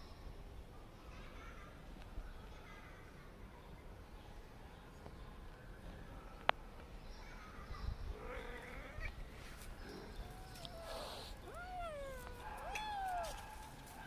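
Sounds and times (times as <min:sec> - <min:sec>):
kittens meowing: 0:09.9 - 0:13.4.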